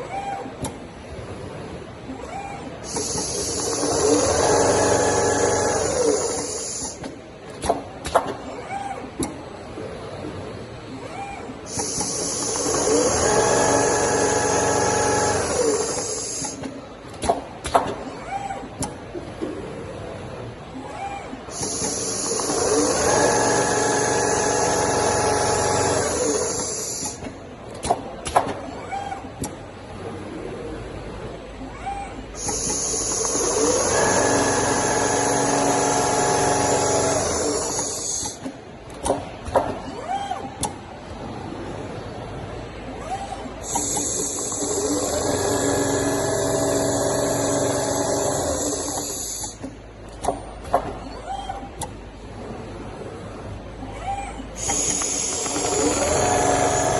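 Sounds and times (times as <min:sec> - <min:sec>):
sewing machine whine: 0:02.5 - 0:07.0, 0:11.8 - 0:16.6, 0:21.5 - 0:27.2, 0:32.4 - 0:38.4, 0:43.6 - 0:49.6, 0:54.6 - 0:56.9.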